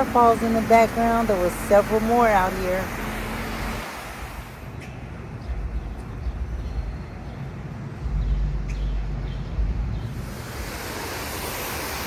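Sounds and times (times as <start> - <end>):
rush of falling water: 0.0 - 4.7, 10.1 - 12.0.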